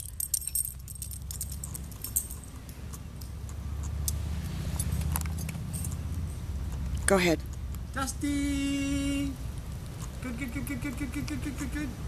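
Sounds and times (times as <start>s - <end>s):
faint metallic jingling: 0.0s - 3.4s, 4.7s - 6.6s.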